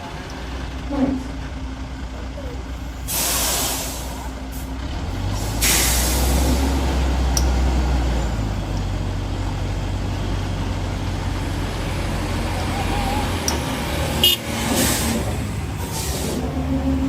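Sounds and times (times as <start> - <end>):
truck diesel engine droning: 0.0 - 17.0
air brake hiss: 3.1 - 4.3, 5.4 - 6.6.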